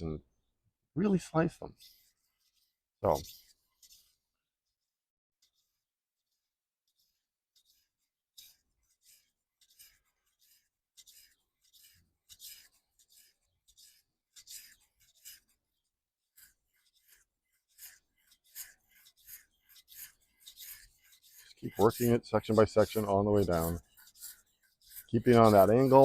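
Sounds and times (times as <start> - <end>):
knife scraping sharpening stone: 16.3 - 26.0.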